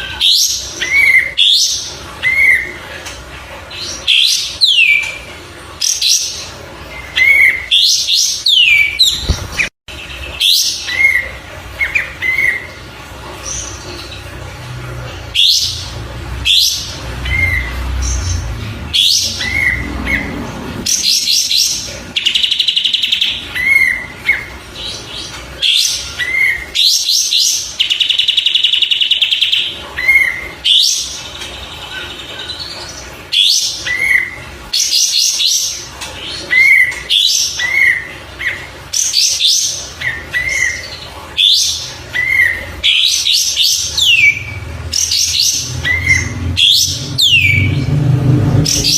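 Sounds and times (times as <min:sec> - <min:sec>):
low rumble: 0:17.0 - 0:20.9.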